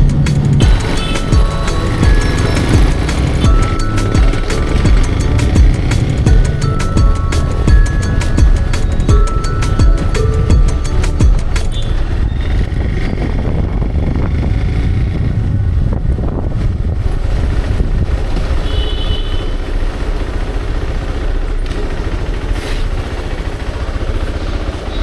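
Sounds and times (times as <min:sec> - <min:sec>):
high steady tone: 0:00.0 - 0:12.7
motorcycle engine drone: 0:00.0 - 0:25.0.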